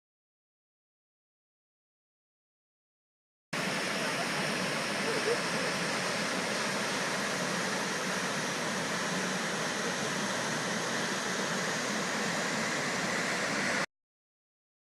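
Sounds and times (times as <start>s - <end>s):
waterfall rushing: 3.6s - 13.9s.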